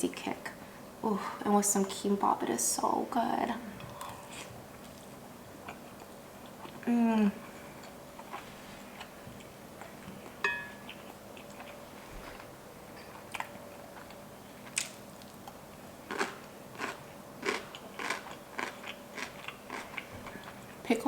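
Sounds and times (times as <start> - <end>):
person chewing food: 3.8 - 20.8
utensil clinking on dish: 10.4 - 10.8.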